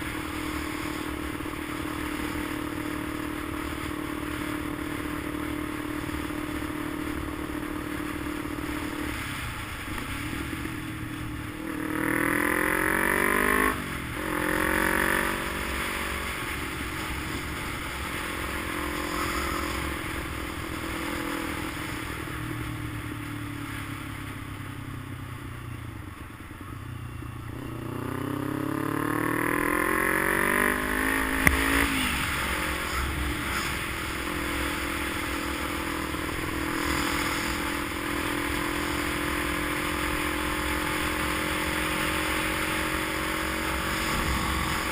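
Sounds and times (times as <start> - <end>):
vehicle engine revving: 11.4 - 22.1, 27.5 - 44.9.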